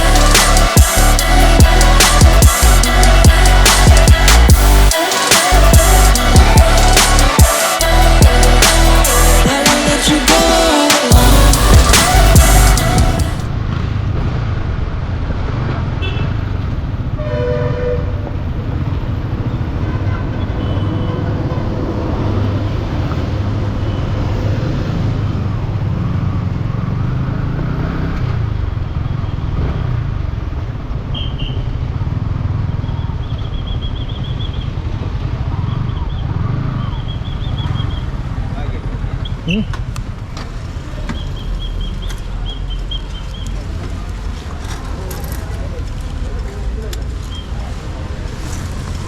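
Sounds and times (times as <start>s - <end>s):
motorcycle engine rumble: 0.0s - 17.2s, 28.4s - 49.0s.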